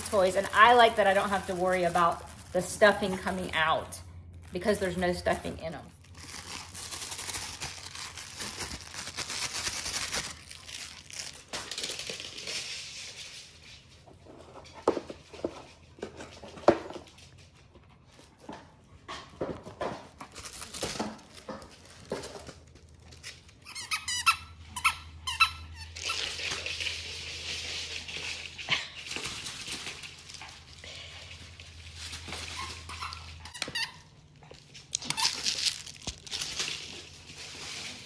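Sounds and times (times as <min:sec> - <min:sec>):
dog toy crinkling: 0:00.0 - 0:13.7, 0:20.2 - 0:38.0
dog toy squeaking: 0:23.6 - 0:26.0.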